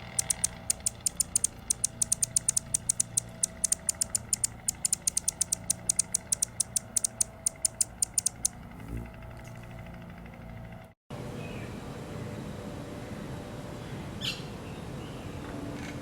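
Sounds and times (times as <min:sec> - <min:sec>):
bird chirping clicking notes: 0:00.0 - 0:08.6.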